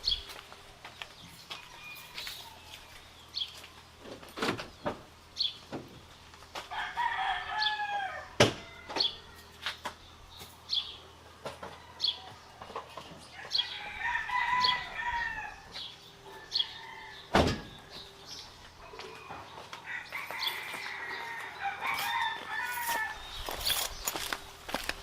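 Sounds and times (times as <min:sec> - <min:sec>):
small birds chirping: 0:00.0 - 0:04.1, 0:04.7 - 0:06.4, 0:08.7 - 0:25.0
rooster crowing: 0:01.5 - 0:03.0, 0:06.7 - 0:09.6, 0:13.3 - 0:18.2, 0:18.8 - 0:23.3.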